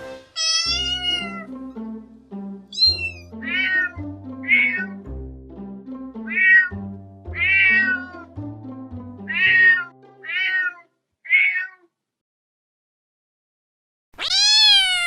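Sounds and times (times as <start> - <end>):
background music low notes: 0.0 - 10.7
cat meowing: 0.4 - 1.5, 2.7 - 5.0, 6.3 - 8.3, 9.3 - 11.9, 14.2 - 15.0.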